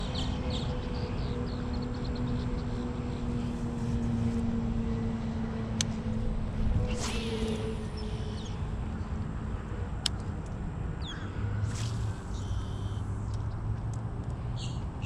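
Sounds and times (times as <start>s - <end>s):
motor-like hum: 0.0s - 14.3s
low rumble: 5.0s - 9.7s.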